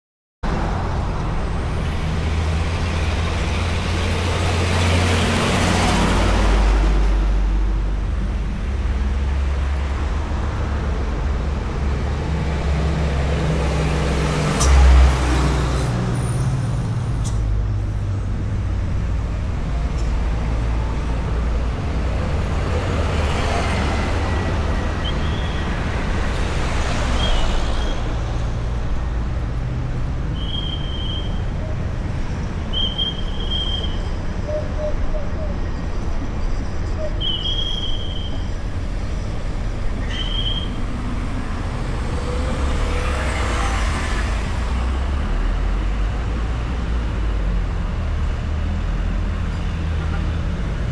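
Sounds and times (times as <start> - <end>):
low rumble of engines and tyres: 0.4 - 50.9
cars and motorbikes passing: 0.5 - 50.9.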